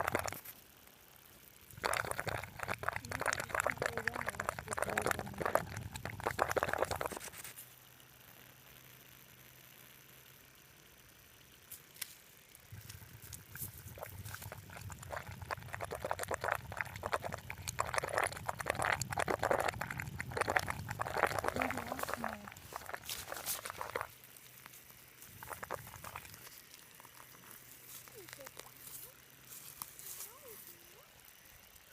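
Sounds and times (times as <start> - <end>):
mud hole gurgling and bubbling: 0.0 - 0.5, 1.7 - 7.3, 12.7 - 29.2.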